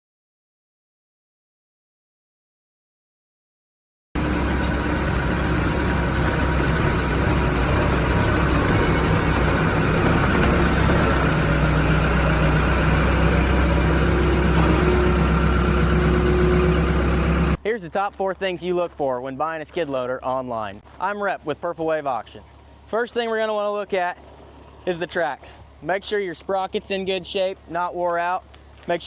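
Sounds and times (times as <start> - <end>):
loader engine running: 4.2 - 17.6.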